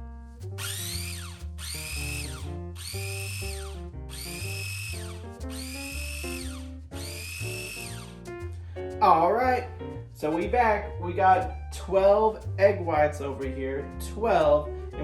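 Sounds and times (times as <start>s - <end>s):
background music: 0.0s - 15.0s
electric mixer motor whine: 0.6s - 8.3s.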